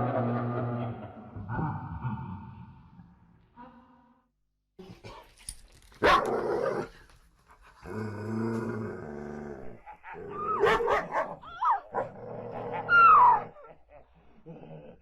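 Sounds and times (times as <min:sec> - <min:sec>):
animal growling low: 0:00.0 - 0:03.3, 0:07.8 - 0:10.6, 0:12.1 - 0:15.0
animal yelping and whining: 0:12.6 - 0:13.7.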